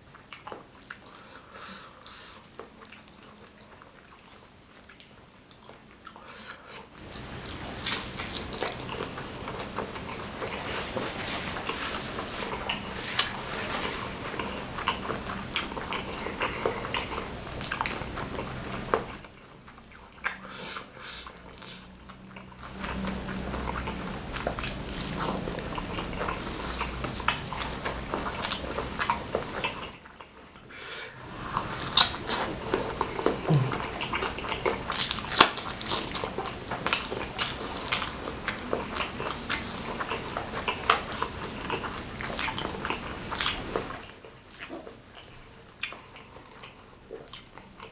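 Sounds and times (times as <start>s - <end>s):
close-miked chewing and biting: 0.1s - 30.7s, 31.3s - 47.9s.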